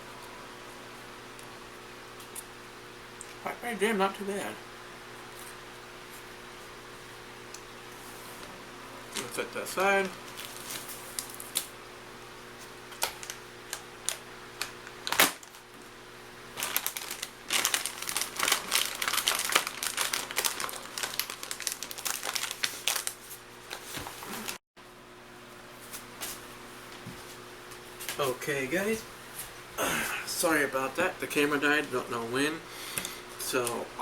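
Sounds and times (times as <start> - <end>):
plastic packaging crinkling: 9.2 - 11.7, 12.9 - 15.8, 16.5 - 24.6.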